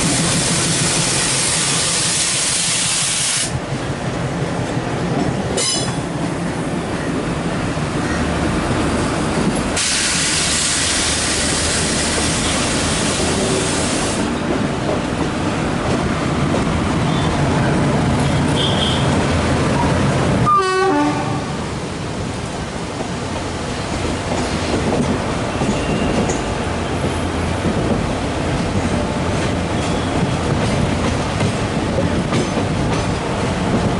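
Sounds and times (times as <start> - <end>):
compressed air hissing: 0.4 - 3.6, 9.8 - 14.3.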